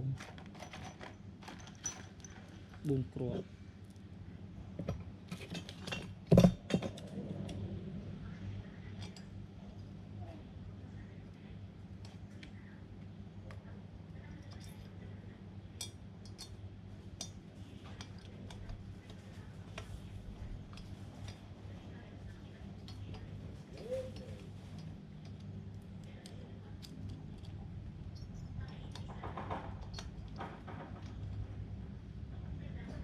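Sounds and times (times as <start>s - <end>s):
steady low hum: 0.0s - 33.0s
small metal parts clinking: 0.2s - 2.9s.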